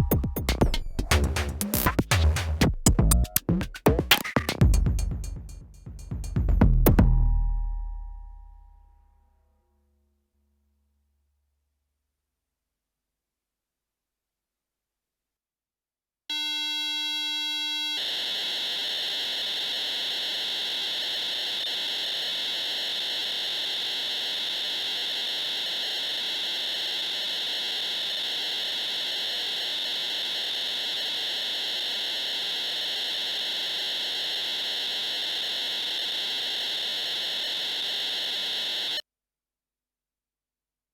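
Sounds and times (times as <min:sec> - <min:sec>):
steady electronic tones: 0:16.3 - 0:18.6
modem-like data hiss: 0:16.3 - 0:39.0.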